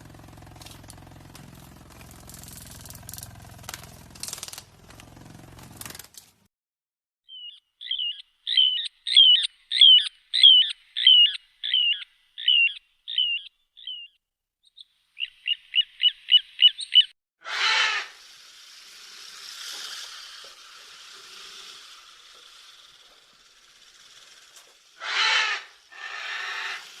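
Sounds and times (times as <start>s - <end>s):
bird chirping: 7.2s - 17.2s
steady hiss: 18.0s - 27.0s.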